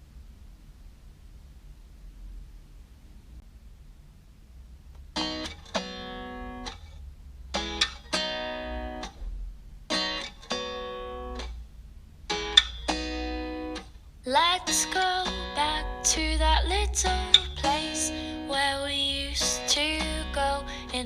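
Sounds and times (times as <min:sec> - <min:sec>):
faint low hum: 0:00.0 - 0:21.0
acoustic guitar strumming chords: 0:05.2 - 0:06.8, 0:07.6 - 0:09.2, 0:09.9 - 0:11.6, 0:12.3 - 0:21.0.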